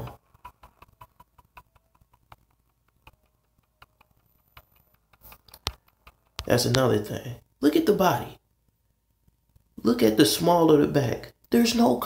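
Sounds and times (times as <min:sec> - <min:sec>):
faint irregular clicks: 0:00.0 - 0:07.6, 0:08.2 - 0:09.9.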